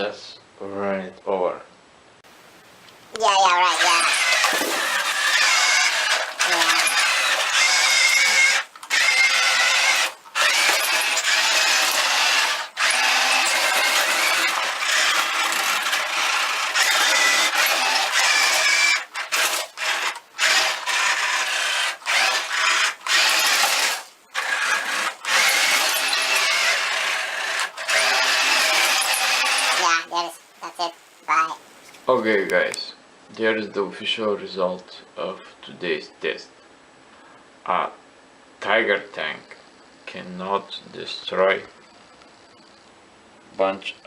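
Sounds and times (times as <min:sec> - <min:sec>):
toy tank motors whining: 0:03.2 - 0:31.6.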